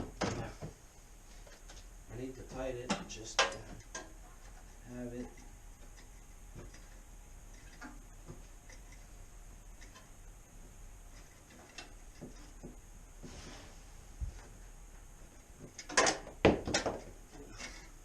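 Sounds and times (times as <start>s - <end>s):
hand tools clicking and scraping: 17.4s - 18.0s.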